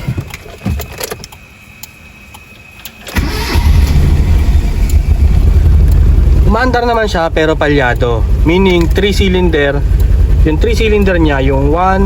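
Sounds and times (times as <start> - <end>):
engine starting: 3.0 - 5.6
misfiring engine idling: 3.1 - 12.0.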